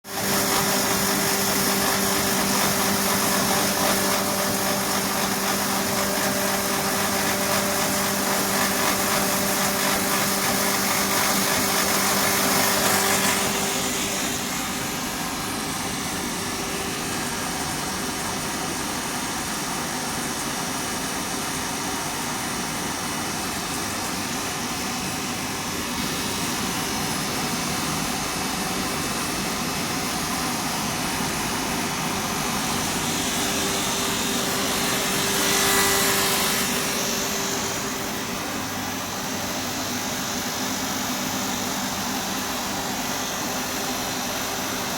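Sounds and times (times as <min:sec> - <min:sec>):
milling machine grinding whir: 0:00.1 - 0:18.1, 0:29.8 - 0:44.9.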